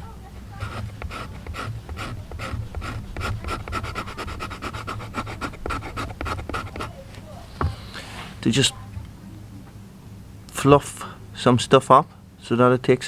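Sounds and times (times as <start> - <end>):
knife scraping a stick: 0.4 - 7.0.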